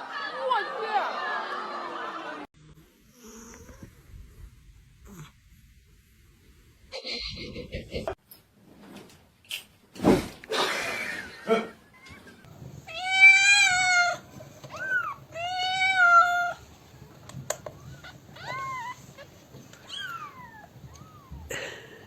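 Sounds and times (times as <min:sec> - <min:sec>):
cat meowing: 0:17.8 - 0:21.5.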